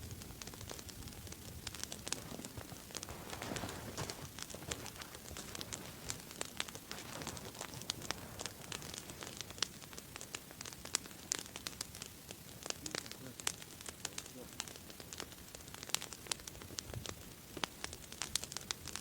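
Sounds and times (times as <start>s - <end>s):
wood fire crackling and popping: 0.0s - 19.0s.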